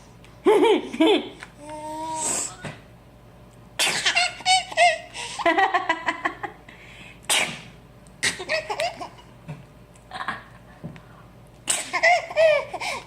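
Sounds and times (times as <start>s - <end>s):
baby laughing: 3.9s - 5.1s, 8.2s - 9.3s, 11.8s - 13.0s
woman fake sneezing: 7.3s - 8.4s.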